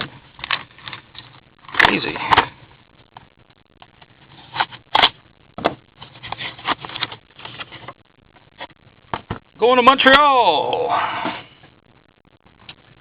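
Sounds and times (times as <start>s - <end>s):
cards scraping and rustling: 3.9s - 5.2s, 6.0s - 8.0s.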